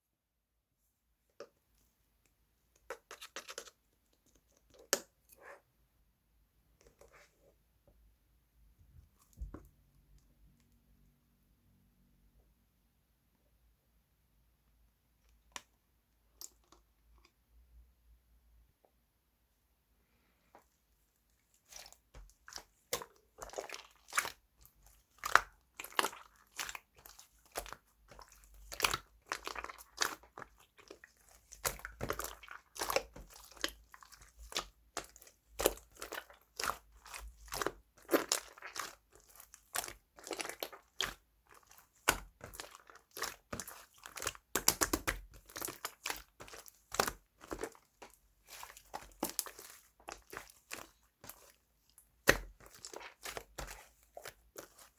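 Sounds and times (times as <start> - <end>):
slime squished by hand: 21.6 - 54.9.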